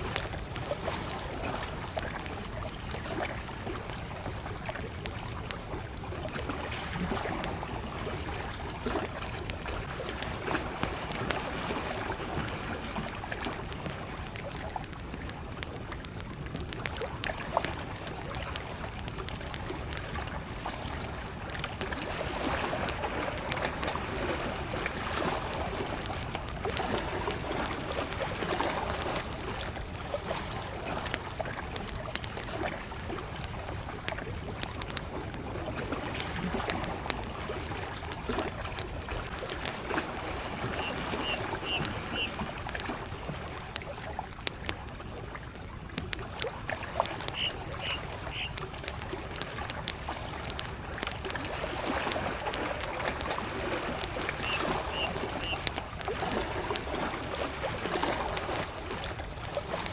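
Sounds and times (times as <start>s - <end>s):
waves lapping at shore: 0.0s - 59.9s
wood fire crackling and popping: 0.0s - 59.9s
bird chirping: 40.8s - 42.4s, 47.3s - 48.6s, 54.4s - 55.6s.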